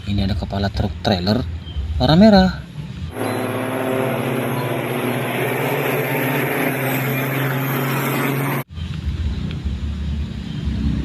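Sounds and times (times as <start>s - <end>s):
truck engine running: 3.1s - 11.0s.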